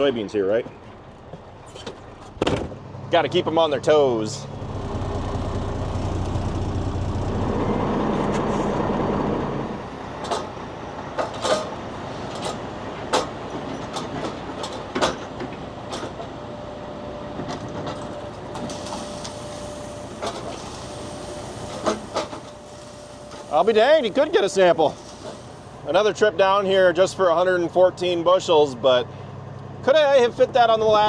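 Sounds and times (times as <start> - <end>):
sharp clanks and knocks: 0.6 - 2.8, 10.2 - 16.3
truck engine running: 0.7 - 31.0.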